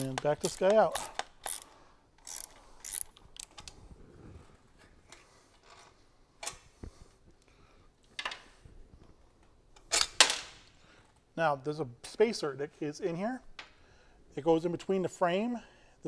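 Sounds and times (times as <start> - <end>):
socket wrench ratchet clicking: 0.0 - 3.6.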